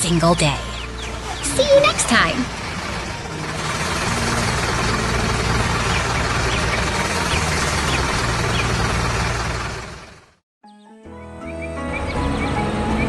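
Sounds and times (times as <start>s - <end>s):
heavy vehicle engine rumbling: 0.0s - 10.4s.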